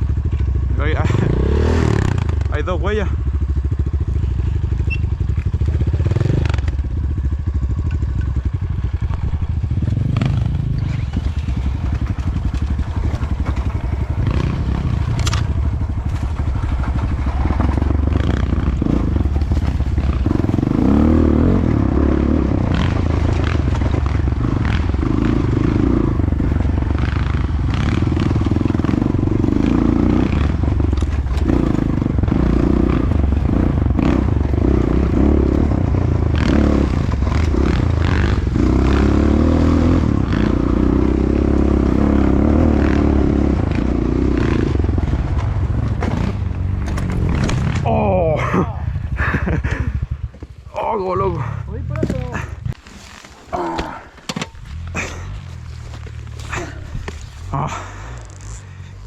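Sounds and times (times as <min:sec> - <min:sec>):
motorcycle engine running: 0:00.0 - 0:59.0
clicks and clatter: 0:15.0 - 0:17.9.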